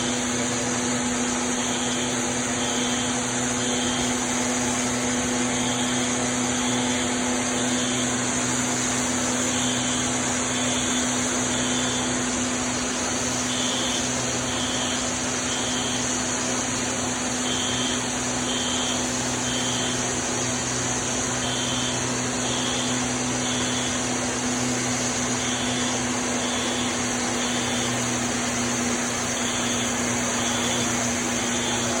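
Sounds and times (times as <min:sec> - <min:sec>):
foam generators rushing and humming: 0:00.0 - 0:32.0
fire alarm beeps: 0:00.1 - 0:12.6, 0:13.2 - 0:32.0.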